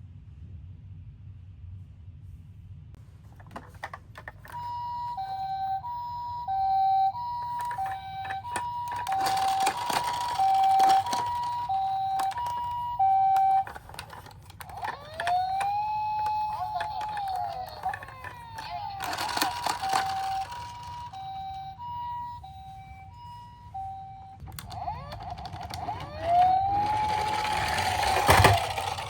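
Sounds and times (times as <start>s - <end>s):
clicks and knocks: 3.3s - 4.8s, 7.3s - 21.2s
two-tone ambulance siren: 3.5s - 29.0s
rising wailing siren: 4.6s - 29.0s.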